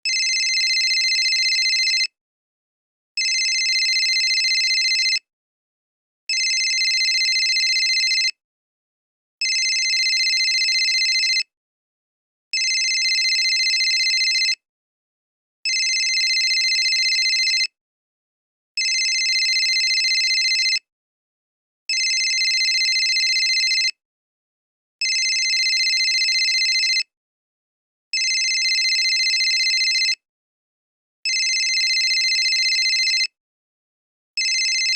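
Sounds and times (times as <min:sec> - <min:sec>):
mobile phone ringing: 0:00.1 - 0:02.1, 0:03.2 - 0:05.2, 0:06.3 - 0:08.3, 0:09.4 - 0:11.4, 0:12.6 - 0:14.6, 0:15.7 - 0:17.7, 0:18.8 - 0:20.8, 0:21.9 - 0:23.9, 0:25.0 - 0:27.0, 0:28.2 - 0:30.2, 0:31.3 - 0:33.3, 0:34.4 - 0:34.9.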